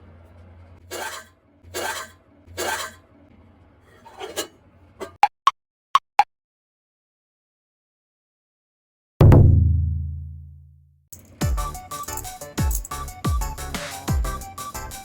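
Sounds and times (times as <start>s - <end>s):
scraping strokes: 0.8s - 3.0s, 3.9s - 5.2s.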